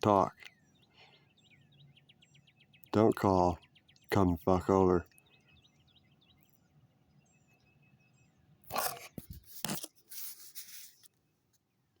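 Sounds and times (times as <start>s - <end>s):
faint bird chirps: 0.0s - 9.5s
phone handling scraping and rustling: 8.7s - 11.1s.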